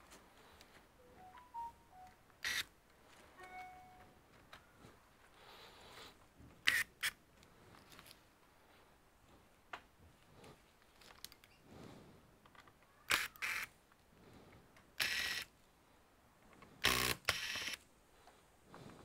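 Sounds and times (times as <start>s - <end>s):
camera shutter snap: 2.4s - 2.7s, 6.7s - 7.2s, 13.1s - 13.7s, 15.0s - 15.5s, 16.8s - 17.8s.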